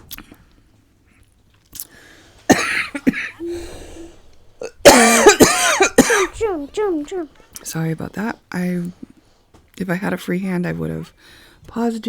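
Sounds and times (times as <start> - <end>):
woman coughing: 2.5 - 7.2.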